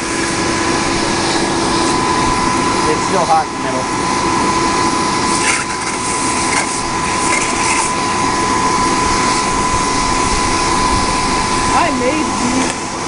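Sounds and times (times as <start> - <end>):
electric air blower whining: 0.0 - 13.0.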